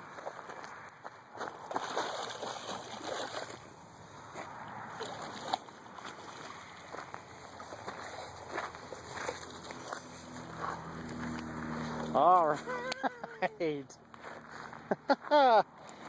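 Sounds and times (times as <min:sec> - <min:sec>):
water splashing and sloshing: 0:00.0 - 0:10.3.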